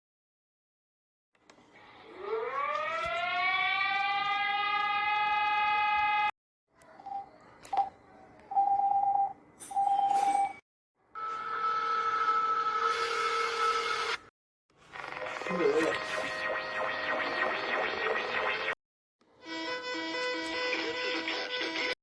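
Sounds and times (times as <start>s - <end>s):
siren tone winding up: 1.8s - 6.3s, 7.0s - 14.3s, 14.9s - 18.8s
alarm beeps: 7.1s - 10.6s, 15.6s - 18.8s.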